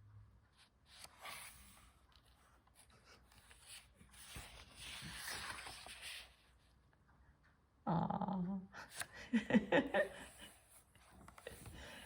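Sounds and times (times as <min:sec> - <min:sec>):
paper pages rustling: 0:00.8 - 0:06.6.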